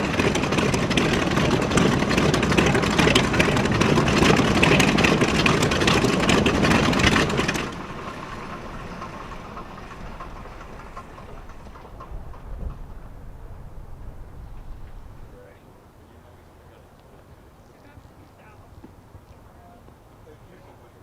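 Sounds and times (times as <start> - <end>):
radial aircraft engines running: 0.0 - 21.0.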